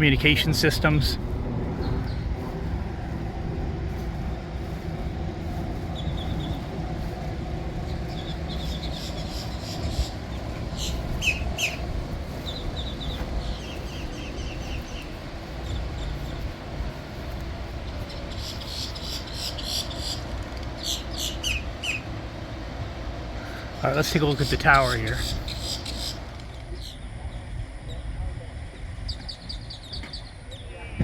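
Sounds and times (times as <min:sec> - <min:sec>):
low mechanical hum and rumble: 0:00.0 - 0:31.0
high bird chirps: 0:07.8 - 0:16.6, 0:17.9 - 0:22.1.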